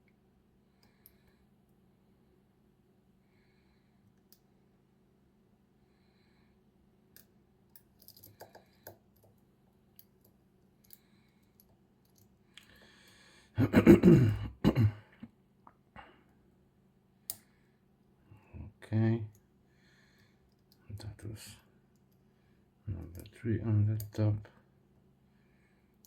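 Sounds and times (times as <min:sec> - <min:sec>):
person clearing throat: 0:13.6 - 0:15.3.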